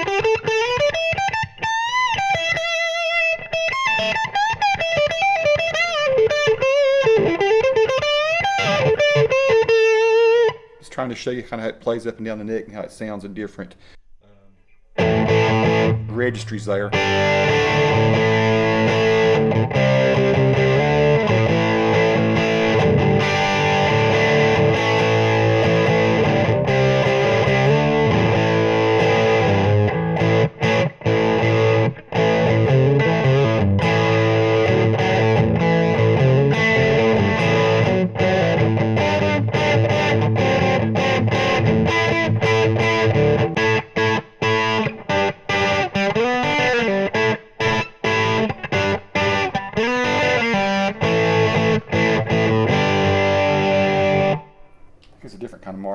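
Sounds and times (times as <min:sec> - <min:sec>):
distorted electric guitar: 0:00.0 - 0:10.8, 0:15.0 - 0:16.2, 0:16.9 - 0:55.0.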